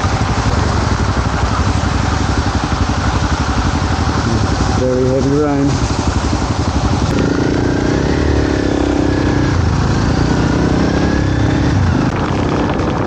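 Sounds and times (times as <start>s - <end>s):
motorcycle engine running: 0.0s - 13.0s.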